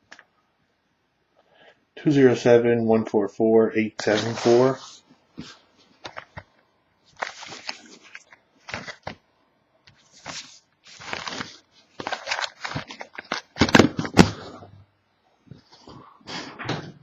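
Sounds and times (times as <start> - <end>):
wrapping rustling and crinkling: 4.0 - 9.2, 9.9 - 14.2.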